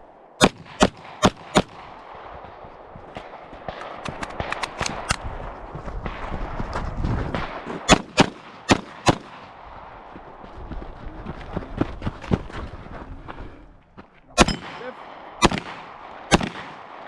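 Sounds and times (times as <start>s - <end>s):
pistol shots: 0.4s - 2.6s, 3.2s - 5.2s, 7.3s - 9.6s, 14.4s - 17.0s.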